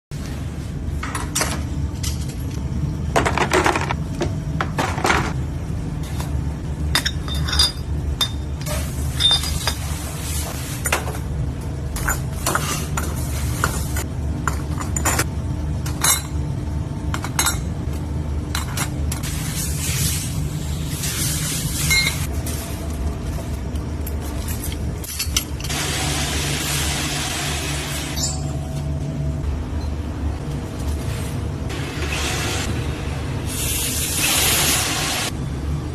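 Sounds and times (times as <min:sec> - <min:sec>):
low machinery hum: 0:00.1 - 0:35.9
metal housings clinking: 0:06.9 - 0:09.8.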